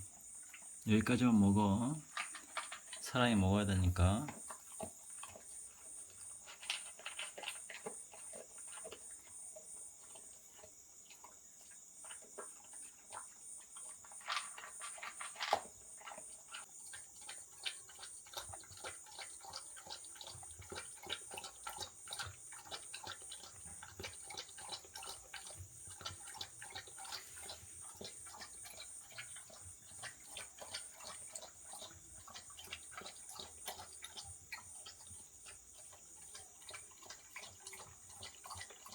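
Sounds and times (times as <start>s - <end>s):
crickets chirping: 0.0s - 38.9s
dog crunching dry kibble: 2.0s - 3.1s, 6.4s - 9.0s, 14.0s - 16.3s.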